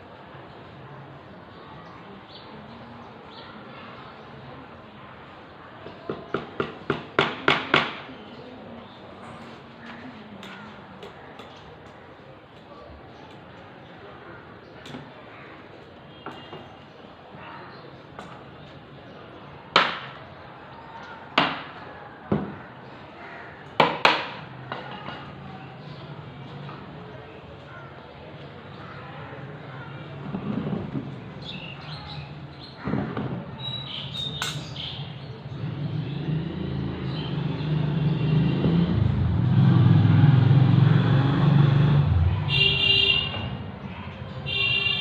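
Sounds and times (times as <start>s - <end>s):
hammer striking wood: 6.1s - 8.1s, 19.8s - 20.2s, 23.8s - 24.4s.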